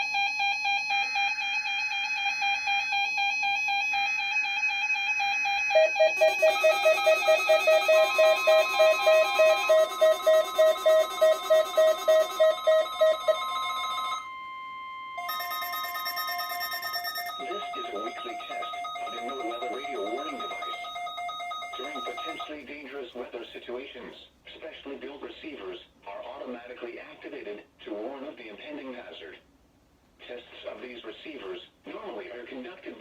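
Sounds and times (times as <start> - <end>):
warbling alarm tone: 0.0 - 22.5
steady alarm tones: 0.0 - 22.6
fast pulsing beep: 5.7 - 14.2, 15.2 - 22.5.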